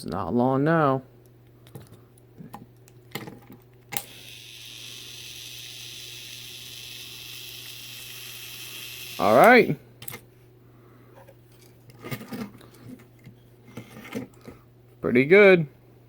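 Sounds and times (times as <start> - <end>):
small battery motor whirring: 4.0 - 9.8.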